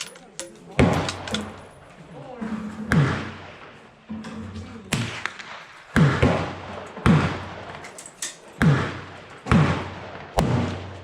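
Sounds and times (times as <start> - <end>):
rifle shots echoing: 0.7 - 1.7, 2.9 - 4.0, 4.9 - 7.9, 8.5 - 11.0.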